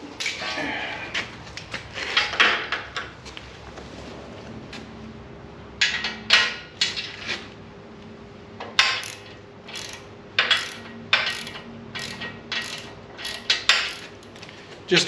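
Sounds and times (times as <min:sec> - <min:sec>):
metallic clicks of bolts and wrench: 0:08.6 - 0:14.5.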